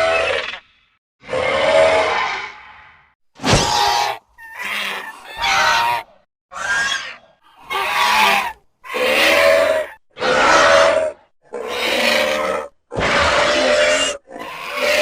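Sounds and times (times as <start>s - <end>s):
creature calls: 3.4s - 15.0s.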